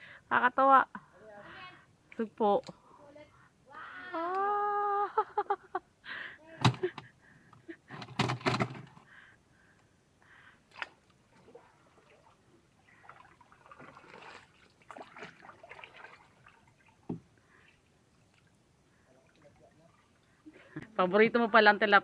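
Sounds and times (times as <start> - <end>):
shallow water sloshing: 10.7 - 20.8.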